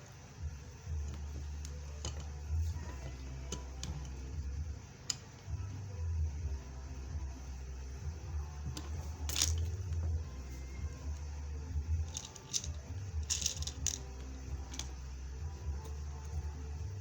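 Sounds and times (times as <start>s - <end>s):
low steady hum: 0.0s - 17.0s
rivet machine clicks and crunches: 12.1s - 14.1s.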